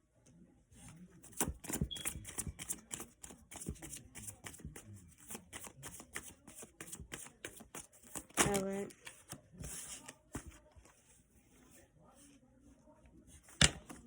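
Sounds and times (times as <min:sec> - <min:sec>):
cards being shuffled: 0:01.3 - 0:10.6.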